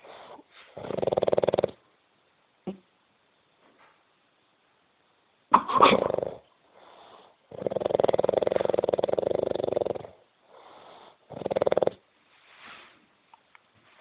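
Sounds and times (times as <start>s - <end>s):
man snoring heavily: 0.8s - 1.8s, 7.5s - 10.2s, 11.3s - 12.0s
faint breaths: 6.5s - 8.6s, 10.1s - 11.5s.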